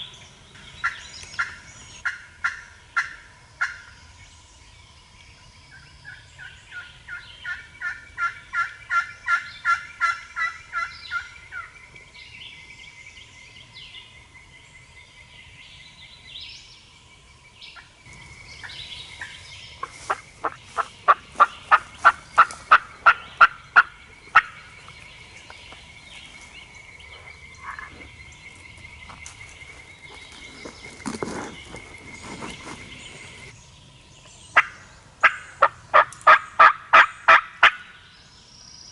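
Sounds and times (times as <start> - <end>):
turkey yelping: 34.6 - 37.8.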